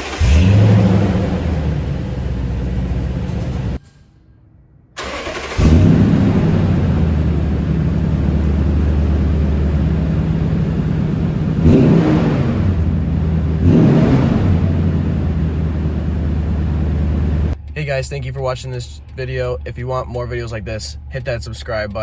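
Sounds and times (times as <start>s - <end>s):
truck engine idling and revving: 0.0s - 3.8s, 5.0s - 17.6s.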